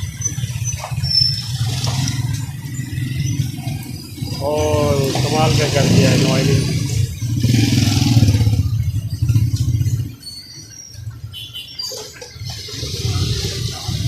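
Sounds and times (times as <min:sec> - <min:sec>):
vehicle engine running: 0:00.0 - 0:10.1.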